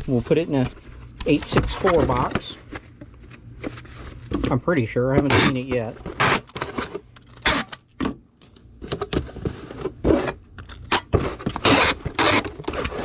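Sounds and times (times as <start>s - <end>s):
packing materials rustling: 0.0s - 4.3s.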